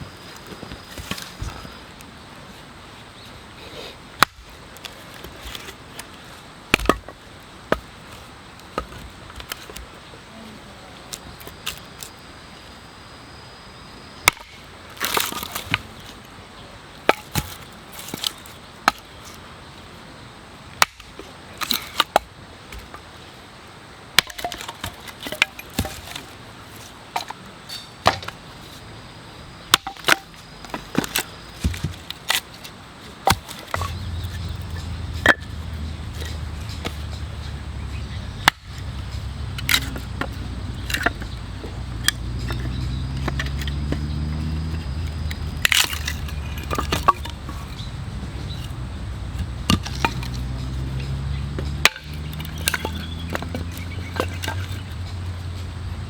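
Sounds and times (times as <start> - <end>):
axe chopping firewood: 4.2 - 4.5, 6.7 - 7.9, 14.2 - 16.0, 17.1 - 19.1, 20.8 - 22.9, 24.2 - 26.3, 27.2 - 28.4, 29.7 - 55.7.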